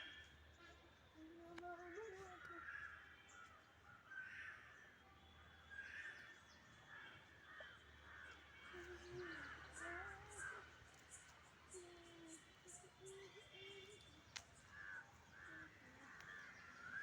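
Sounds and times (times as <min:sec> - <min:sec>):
harsh caw-like bird calls: 0:05.7 - 0:10.7, 0:14.6 - 0:17.0.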